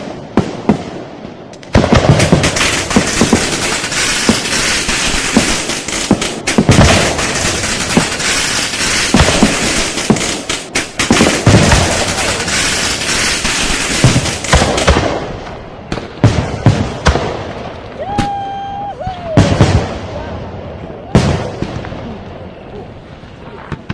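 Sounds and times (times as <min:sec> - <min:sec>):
firecrackers crackling and banging: 0:00.0 - 0:23.9.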